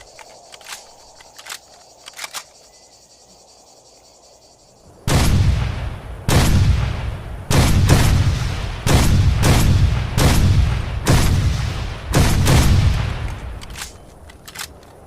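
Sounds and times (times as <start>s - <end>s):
faint clicks: 0.0s - 2.8s, 13.0s - 15.0s
rifle shots: 5.1s - 14.7s.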